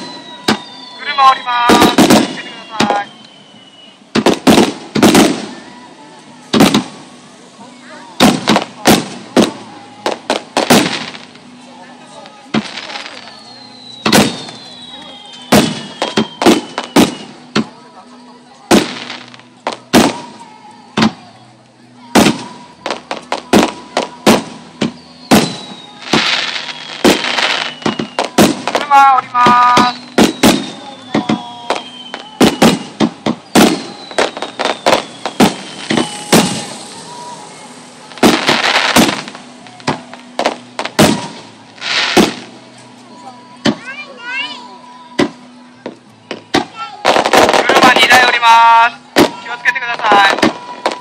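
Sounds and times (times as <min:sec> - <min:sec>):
firework shells bursting: 0:12.5 - 0:17.7, 0:22.1 - 0:42.6.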